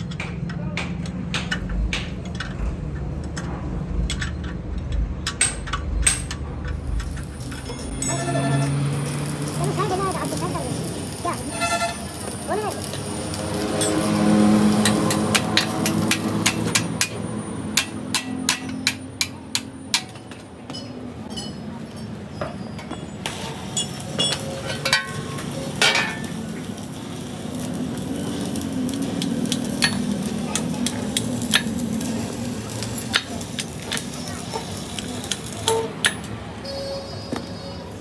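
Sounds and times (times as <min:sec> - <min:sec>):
hammer striking metal: 0:00.0 - 0:09.0, 0:13.7 - 0:26.5.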